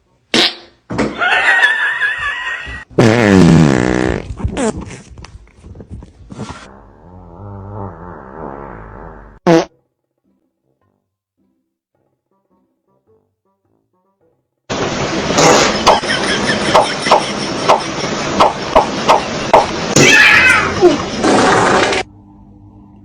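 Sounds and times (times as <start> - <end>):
fart sound effects: 0.3 - 0.8, 2.8 - 5.1, 6.6 - 9.8, 15.3 - 16.0, 20.8 - 22.1.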